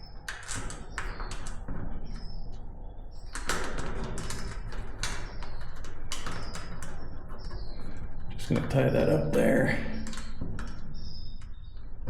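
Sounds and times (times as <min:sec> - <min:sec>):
faint bird chirps: 0:10.8 - 0:11.9.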